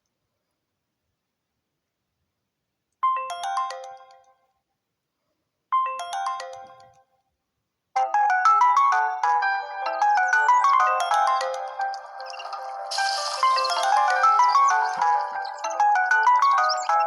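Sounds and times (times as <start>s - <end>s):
smartphone alarm melody: 8.0s - 17.0s.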